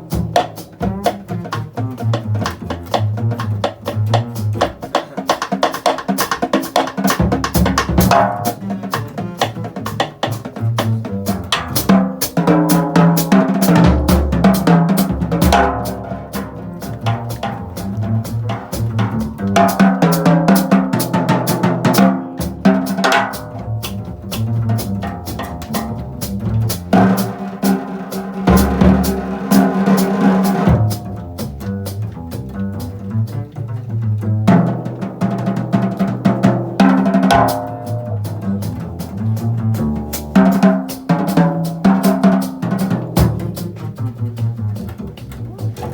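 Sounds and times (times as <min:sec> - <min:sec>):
drum kit: 0:00.0 - 0:45.9
jazz band playing: 0:00.0 - 0:45.9.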